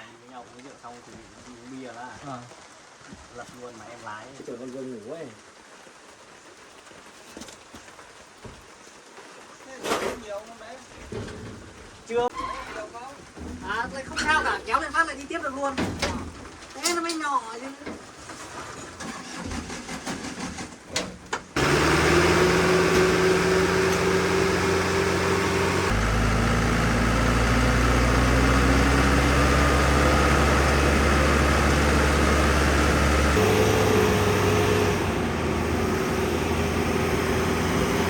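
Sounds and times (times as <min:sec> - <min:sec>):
truck engine running: 0:21.6 - 0:38.0.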